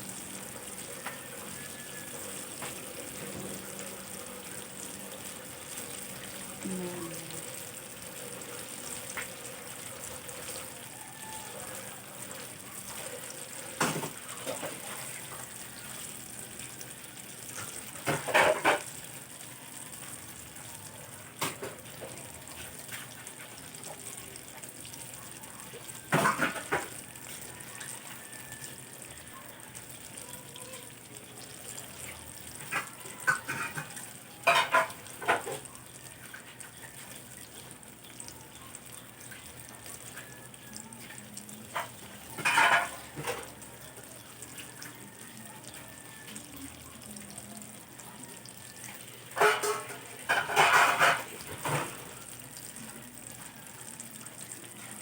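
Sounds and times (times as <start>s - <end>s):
food sizzling in a pan: 0.0s - 55.0s
metal utensil scraping a pan: 32.6s - 35.6s, 41.7s - 43.5s, 49.3s - 52.0s.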